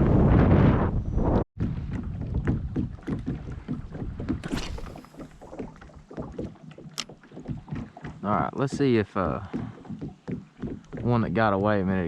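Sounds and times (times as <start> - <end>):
water splashing: 2.0 - 11.1
hissing splash: 4.4 - 6.1
knocks and taps on kayak: 6.2 - 12.0.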